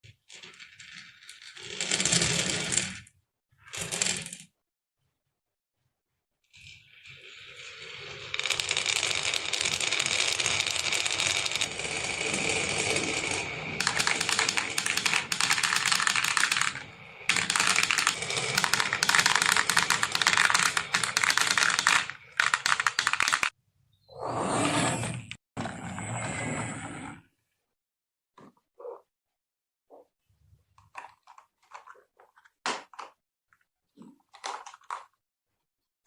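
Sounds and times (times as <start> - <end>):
marbles rattling down wooden track: 7.7 - 23.6.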